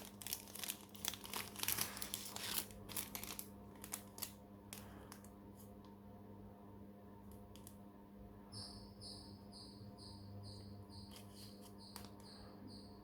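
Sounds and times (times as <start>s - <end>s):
low steady hum: 0.0s - 13.0s
faint high chirping: 8.4s - 13.0s.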